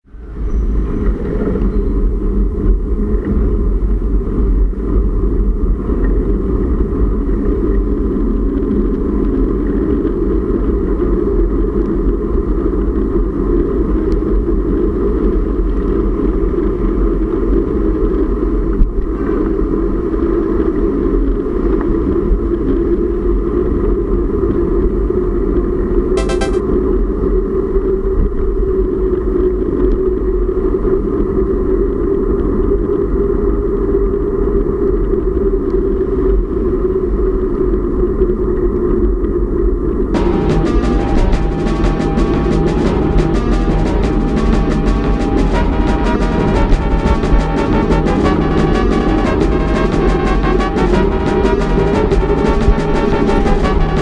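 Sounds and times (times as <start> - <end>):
wind on microphone: 0.1 - 26.1.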